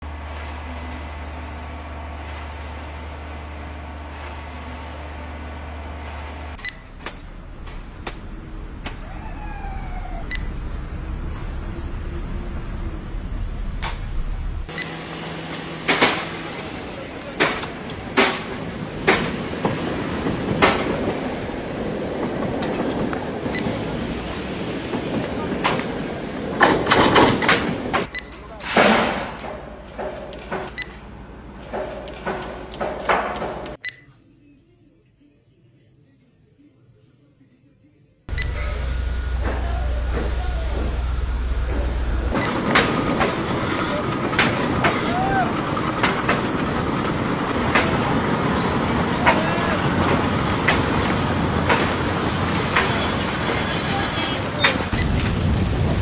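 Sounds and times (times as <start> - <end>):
heavy machine engine drone: 0.0 - 19.4, 38.3 - 56.0
sharp knocks and clatter: 31.6 - 33.8, 41.7 - 45.0, 49.2 - 52.0
short falling whine: 38.3 - 42.7
loud knocks and clatter: 38.3 - 45.0.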